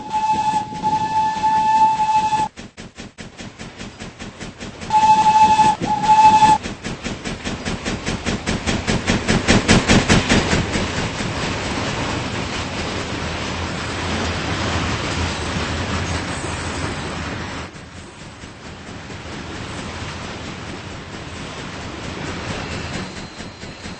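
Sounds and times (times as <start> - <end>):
steam locomotive whistle: 0.0 - 2.5, 4.9 - 6.6
steam locomotive chuffing: 0.0 - 23.9
train rumbling past: 0.0 - 23.9.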